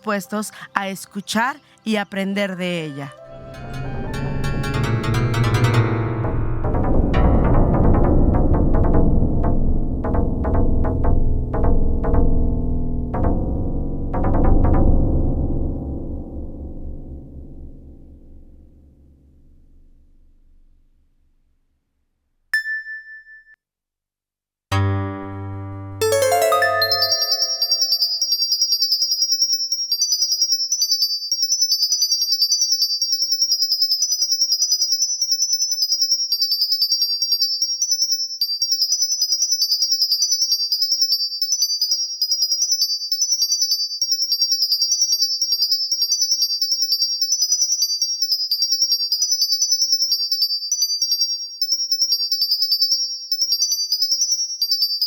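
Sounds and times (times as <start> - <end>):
low synth chord: 3.3 - 18.5, 24.7 - 28.2
high tinkling synthesized notes: 3.4 - 7.4, 24.8 - 28.4.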